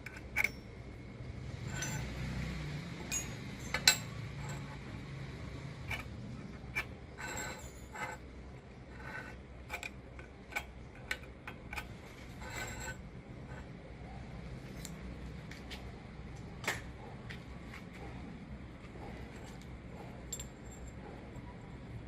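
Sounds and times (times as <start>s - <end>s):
low steady hum: 0.0s - 22.0s
metallic clicks and clinks: 3.0s - 4.8s, 20.3s - 21.0s.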